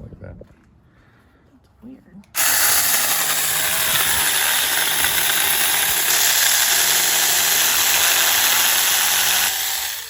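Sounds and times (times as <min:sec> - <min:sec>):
electric chainsaw cutting a limb: 0:02.4 - 0:10.0.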